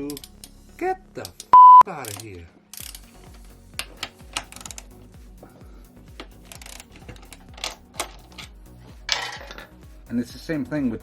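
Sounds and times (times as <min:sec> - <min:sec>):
ratchet wrench clicking: 0:00.0 - 0:00.6, 0:01.4 - 0:05.0, 0:06.2 - 0:08.5
background music: 0:00.0 - 0:11.0.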